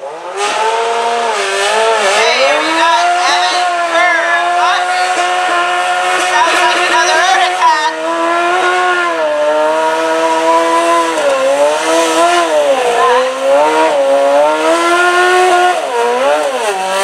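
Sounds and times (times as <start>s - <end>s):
tractor engine at high revs: 0.0s - 17.0s
announcer speaking: 2.0s - 9.0s, 11.5s - 14.7s.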